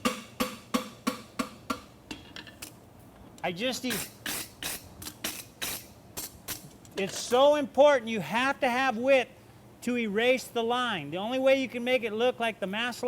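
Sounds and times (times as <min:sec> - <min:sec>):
hammer striking horseshoe on anvil: 0:00.0 - 0:02.0.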